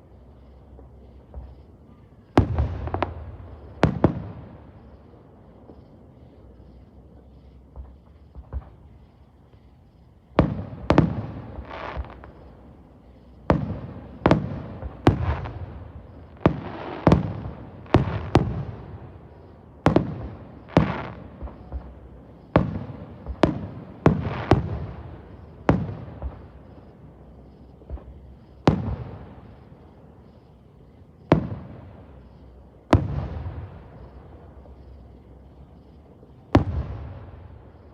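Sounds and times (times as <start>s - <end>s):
fireworks bangs: 13.4s - 37.9s.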